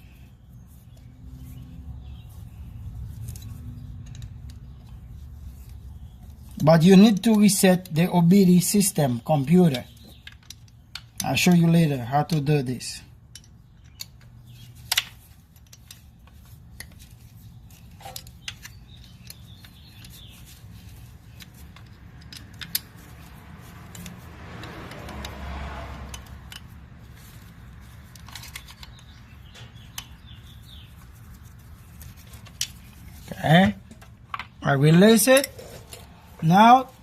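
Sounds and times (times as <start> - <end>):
hand tools clicking on metal: 6.5 - 12.5, 13.3 - 30.8, 31.8 - 36.6.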